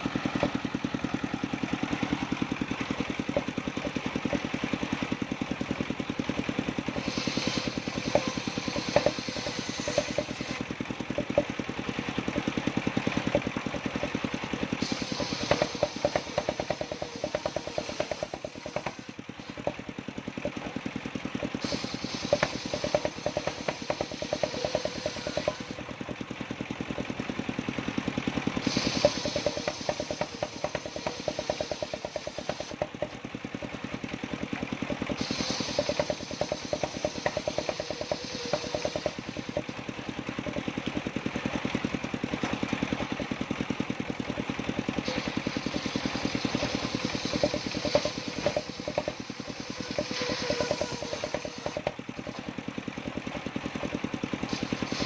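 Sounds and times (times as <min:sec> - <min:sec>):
engine pulsing: 0:00.0 - 0:55.0
saw blade cutting wood: 0:06.9 - 0:19.9, 0:21.4 - 0:25.9, 0:28.6 - 0:33.2, 0:34.9 - 0:39.8, 0:45.0 - 0:52.5, 0:54.5 - 0:55.0.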